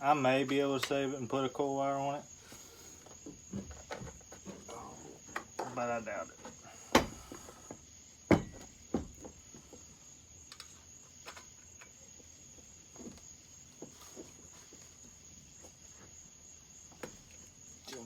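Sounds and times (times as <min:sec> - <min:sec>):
crickets chirping: 0:00.0 - 0:18.0
hand tools tapping and knocking: 0:03.0 - 0:09.8.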